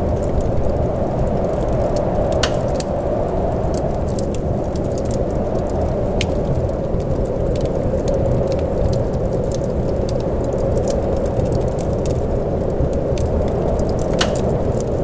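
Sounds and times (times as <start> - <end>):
steady rain: 0.0 - 15.0
sharp ticks and pops: 2.0 - 3.0, 4.1 - 15.0.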